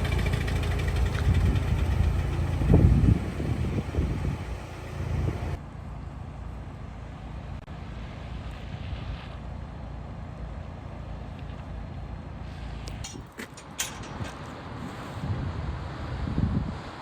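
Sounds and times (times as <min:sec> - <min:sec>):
vehicle engine rumbling: 0:00.0 - 0:16.9
wind on microphone: 0:01.0 - 0:05.6, 0:14.0 - 0:17.0.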